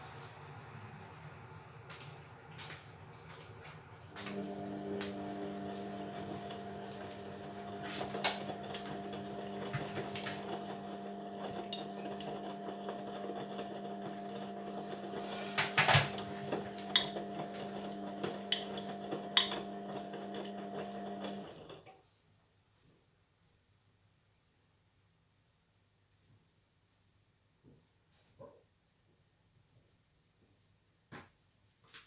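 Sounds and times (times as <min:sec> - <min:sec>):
washing machine motor humming: 0:03.6 - 0:21.8.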